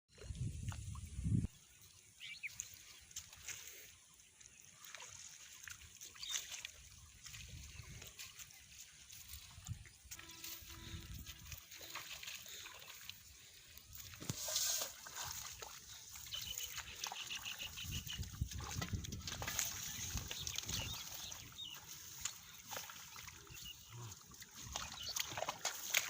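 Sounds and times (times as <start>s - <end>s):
hands splashing in muddy water: 10.8s - 26.0s.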